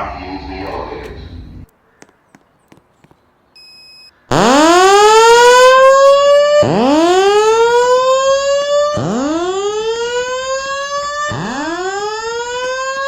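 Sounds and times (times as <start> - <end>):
short high beep: 3.6 - 4.1
fire alarm whoop siren: 4.3 - 13.0.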